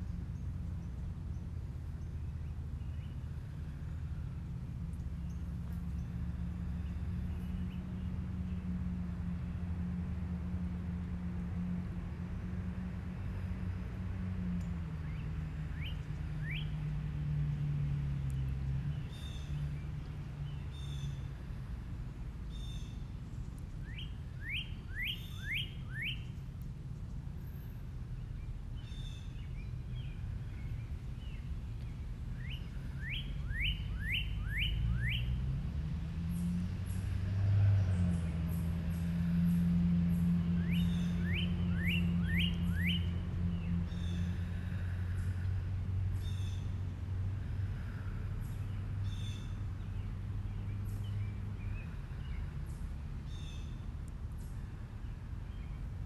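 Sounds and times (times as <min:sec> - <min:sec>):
sweeping whistled bird notes: 0:15.1 - 0:16.8, 0:23.8 - 0:26.3, 0:32.4 - 0:35.4, 0:40.6 - 0:43.2
birds singing: 0:22.4 - 0:35.4, 0:38.0 - 0:44.4.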